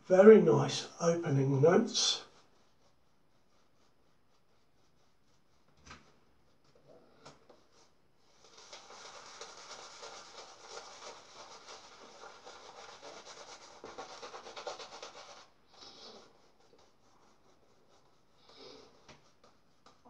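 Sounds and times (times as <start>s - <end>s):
shaving brush scrubbing lather: 7.6s - 20.0s.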